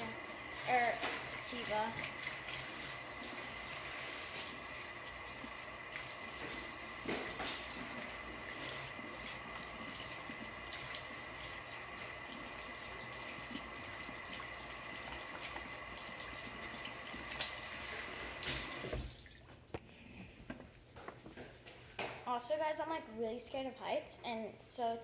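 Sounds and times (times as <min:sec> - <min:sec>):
water running from a tap: 0:00.0 - 0:19.5.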